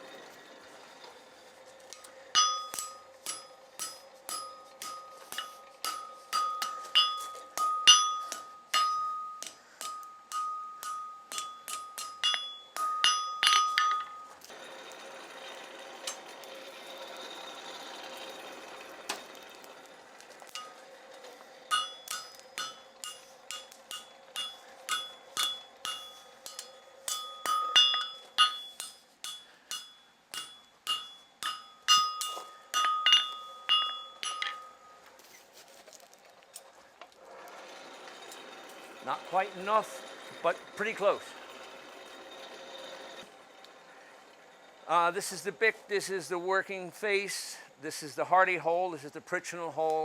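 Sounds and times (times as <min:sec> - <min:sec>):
hammer striking iron on anvil: 0:01.9 - 0:14.5, 0:20.5 - 0:20.9, 0:21.7 - 0:35.0.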